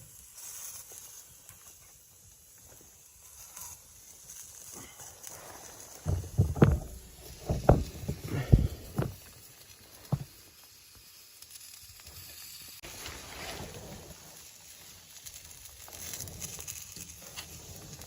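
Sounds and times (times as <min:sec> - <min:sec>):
rustling: 0:05.3 - 0:09.4
dull thumps and knocks: 0:06.1 - 0:09.3, 0:10.1 - 0:10.3.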